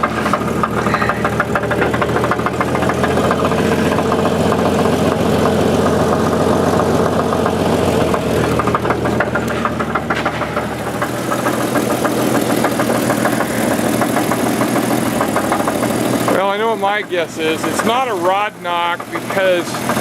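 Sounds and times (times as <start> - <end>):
car engine idling: 0.0 - 20.0
rapid engine knock: 0.0 - 20.0.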